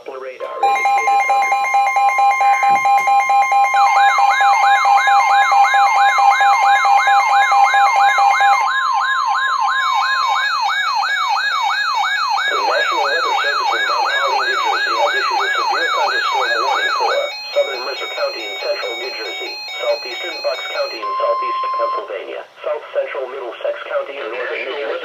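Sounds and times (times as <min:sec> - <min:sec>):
steady two-tone attention signal: 0:00.6 - 0:08.6, 0:12.4 - 0:22.2
electronic siren whoop: 0:00.6 - 0:21.5.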